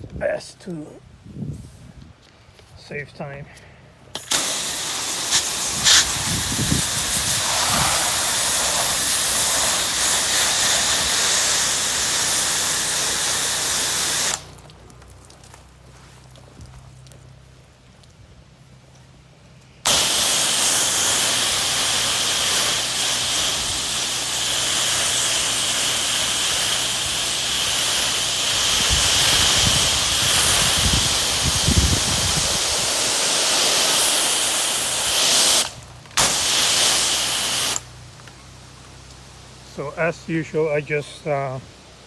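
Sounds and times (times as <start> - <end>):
wind buffeting microphone: 1.1 - 2.2, 5.4 - 9.6, 28.7 - 33.0
pressure washer spraying water: 4.2 - 14.6, 19.9 - 38.0.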